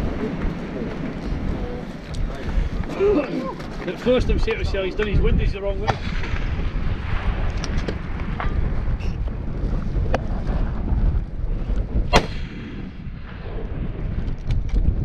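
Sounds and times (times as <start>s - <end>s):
wind rumble on microphone: 0.0s - 15.0s
rifle shot with echo: 5.9s - 8.5s, 12.1s - 14.1s.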